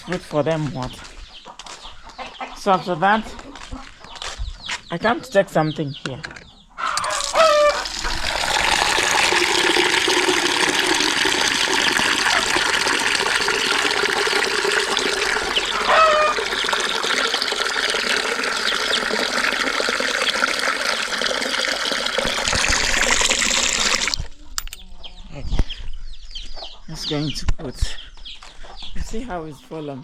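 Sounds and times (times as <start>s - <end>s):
chicken calling: 6.6s - 9.0s, 11.6s - 20.5s
water running into a container: 7.0s - 24.3s.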